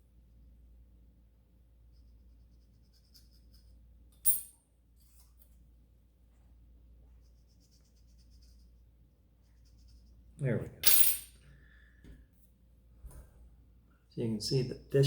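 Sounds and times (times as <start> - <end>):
faint scratching and snipping: 1.9 - 3.8.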